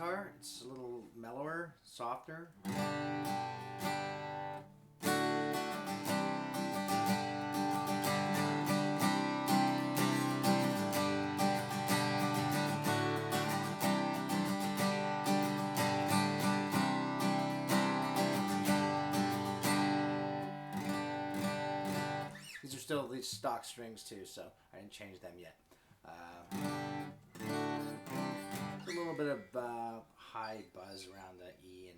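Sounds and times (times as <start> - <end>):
acoustic guitar strummed: 2.6 - 22.6, 26.4 - 29.9.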